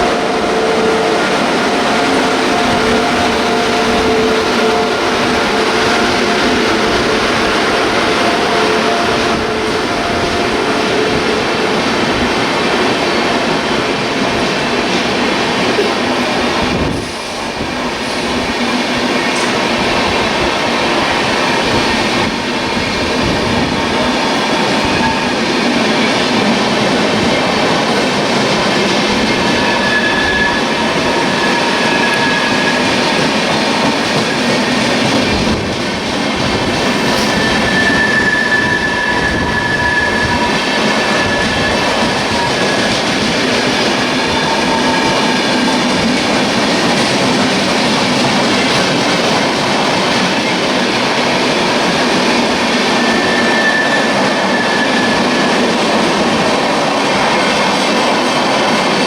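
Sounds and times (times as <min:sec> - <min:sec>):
train passing on rails: 0:00.0 - 0:59.0
high-pitched wheel squeals: 0:29.2 - 0:33.4, 0:36.8 - 0:45.9, 0:52.7 - 0:56.3.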